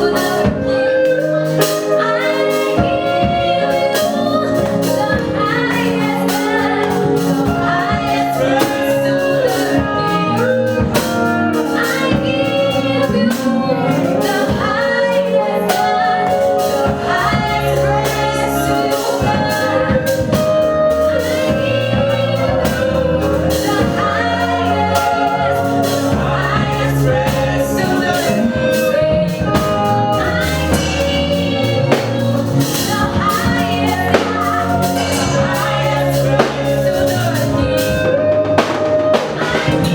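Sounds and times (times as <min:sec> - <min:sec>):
drum beats: 0:00.0 - 0:39.9
voices singing worship song: 0:00.0 - 0:39.9.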